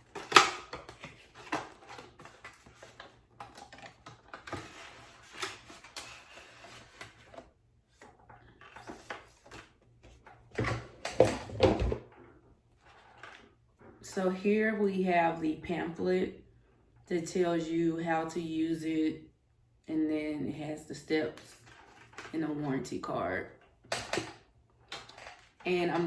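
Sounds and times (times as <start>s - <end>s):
cardboard and paper rustling: 0.0s - 12.1s, 12.7s - 13.5s, 21.5s - 22.3s, 24.9s - 26.0s.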